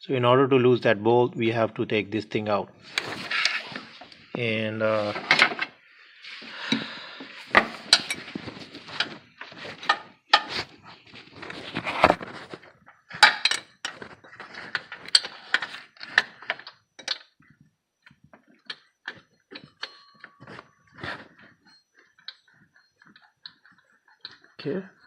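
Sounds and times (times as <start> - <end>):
tool scraping: 2.8 - 16.4.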